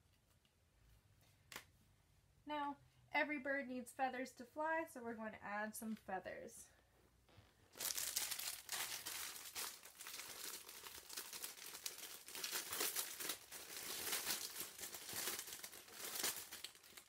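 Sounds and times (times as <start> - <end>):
plastic bag crinkling: 7.7 - 17.0.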